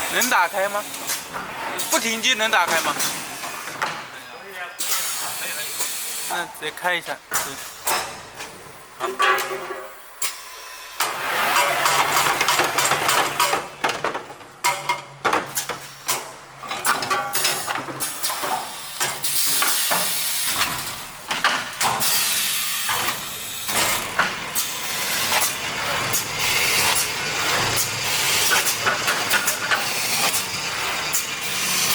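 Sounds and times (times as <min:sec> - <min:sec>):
machine hissing: 0:04.8 - 0:08.2, 0:17.3 - 0:31.9.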